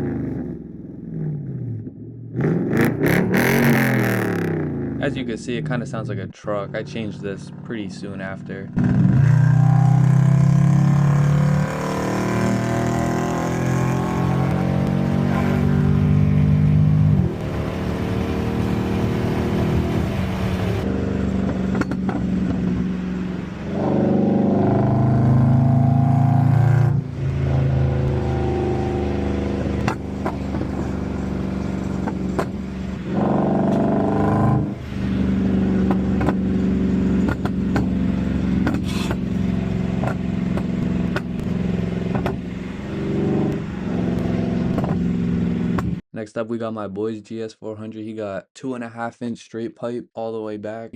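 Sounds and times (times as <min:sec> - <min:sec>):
deep car engine revving: 0:00.0 - 0:46.0.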